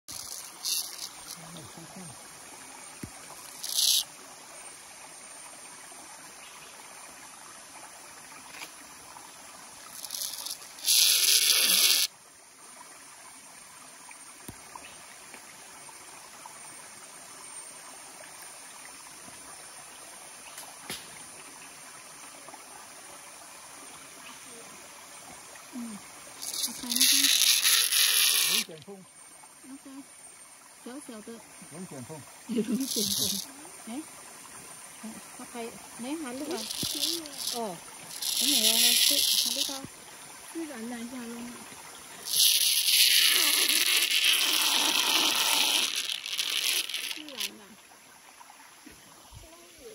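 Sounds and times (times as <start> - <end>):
water trickling: 0.1 - 49.9
loud hissing suction noise: 10.0 - 12.1.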